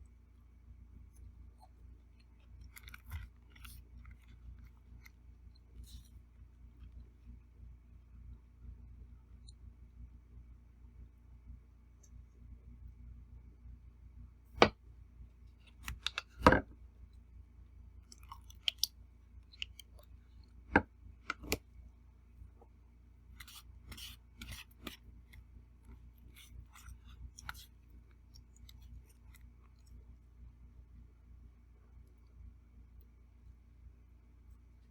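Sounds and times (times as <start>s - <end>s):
soft chewing: 0.8s - 7.7s, 17.0s - 33.7s.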